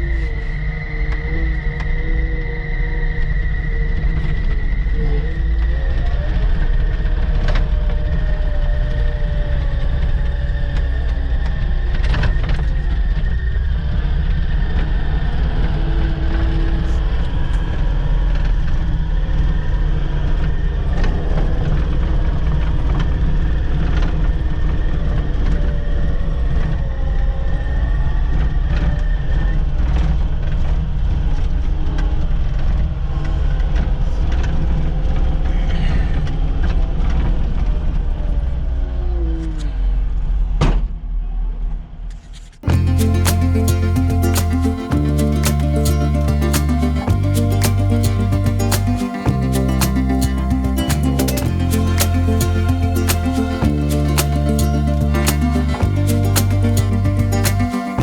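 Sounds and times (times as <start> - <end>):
thin high whine: 42.7 - 58.0.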